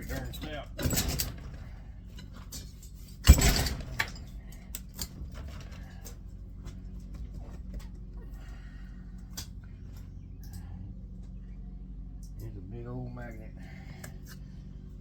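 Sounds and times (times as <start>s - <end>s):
sharp metallic clank: 3.2s - 4.3s.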